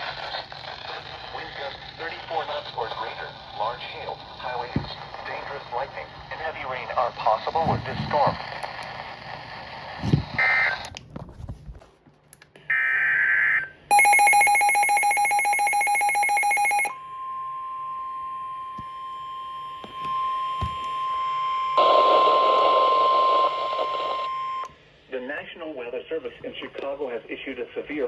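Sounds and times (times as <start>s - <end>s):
steady warning alarm tone: 13.9s - 24.7s.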